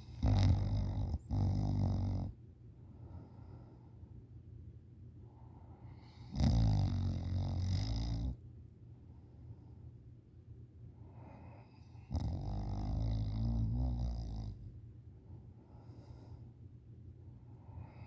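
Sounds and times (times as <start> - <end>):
quiet breathing: 0.0 - 4.2, 5.2 - 6.4, 10.9 - 18.0.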